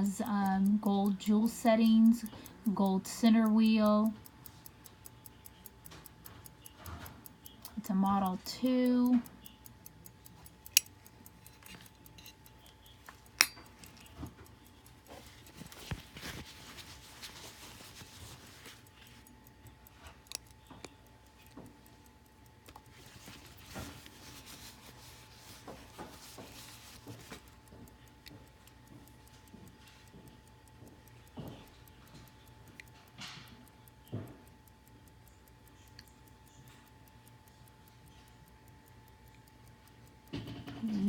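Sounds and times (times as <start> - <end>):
pocket watch ticking: 0.0 - 41.0
handling clicks and rubbing: 10.0 - 27.7.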